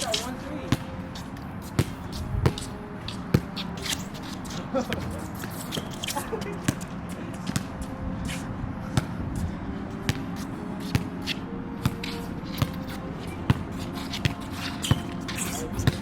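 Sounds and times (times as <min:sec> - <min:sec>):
basketball bouncing: 0:01.8 - 0:02.7, 0:10.1 - 0:10.3, 0:13.5 - 0:15.2.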